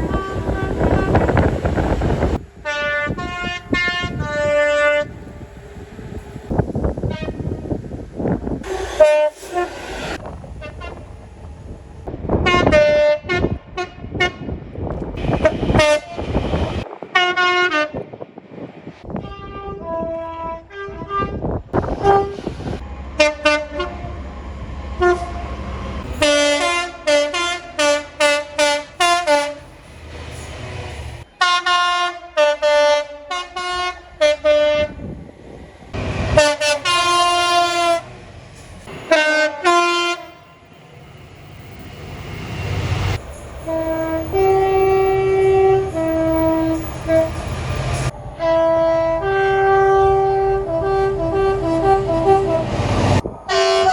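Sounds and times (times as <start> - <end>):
train horns blasting: 0.0 - 5.4, 7.0 - 7.8, 8.6 - 11.2, 12.3 - 14.6, 15.2 - 18.1, 19.1 - 24.3, 24.9 - 29.7, 31.3 - 35.1, 35.9 - 38.2, 38.8 - 40.8, 42.9 - 53.9
rumble of trains running: 0.0 - 53.9.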